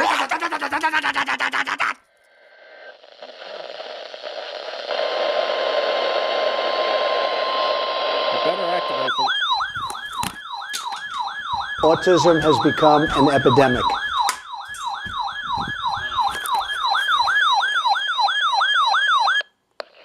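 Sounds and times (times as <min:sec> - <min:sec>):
radio static hiss: 0:02.4 - 0:09.9
electronic siren yelping: 0:05.1 - 0:19.5.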